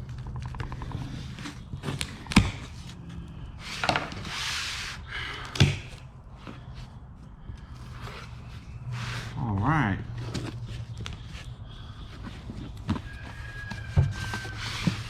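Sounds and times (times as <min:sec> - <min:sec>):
low steady hum: 0:00.0 - 0:13.3
scraping rub: 0:00.6 - 0:05.1, 0:07.6 - 0:09.4, 0:10.2 - 0:15.0.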